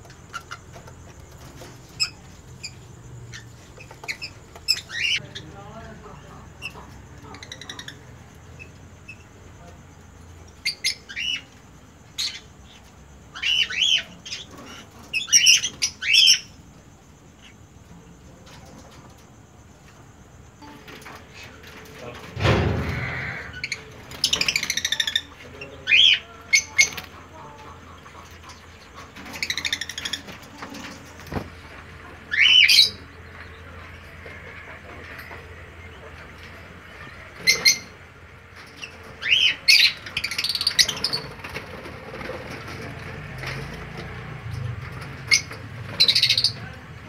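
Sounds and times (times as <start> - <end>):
birds squawking chirps: 0.0 - 5.7, 6.5 - 9.4, 10.5 - 16.6, 22.4 - 42.8, 45.0 - 46.8
bird chirps: 6.6 - 9.3, 45.2 - 46.7
shrill bird screech: 22.6 - 25.3.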